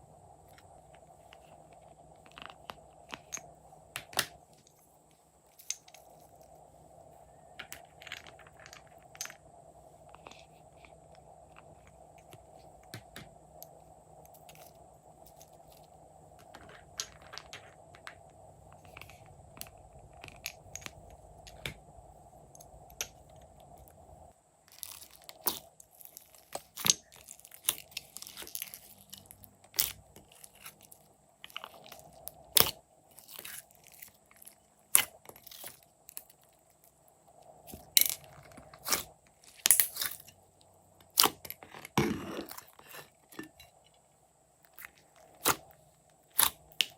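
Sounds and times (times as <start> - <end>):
faint steady hum: 0.0 - 46.9
slime crackling and popping: 46.3 - 46.9.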